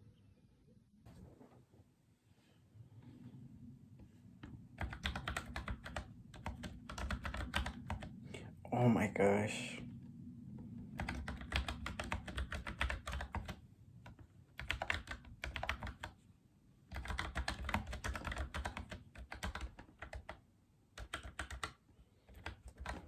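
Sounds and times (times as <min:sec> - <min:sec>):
mechanical keyboard typing: 0:04.8 - 0:08.1, 0:10.9 - 0:16.2, 0:16.9 - 0:20.4, 0:21.0 - 0:23.0.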